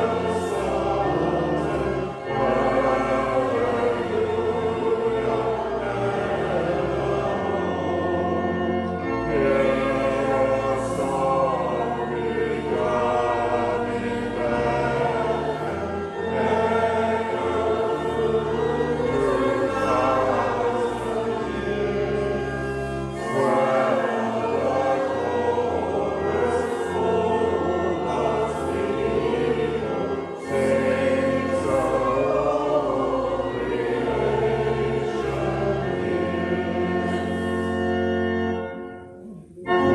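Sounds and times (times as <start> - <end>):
congregation singing a hymn: 0.0 - 39.9
sustained low accompaniment: 0.0 - 39.9.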